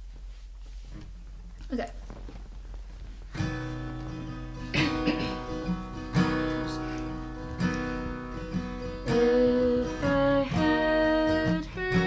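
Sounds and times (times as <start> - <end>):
acoustic guitar strumming: 3.3 - 12.0.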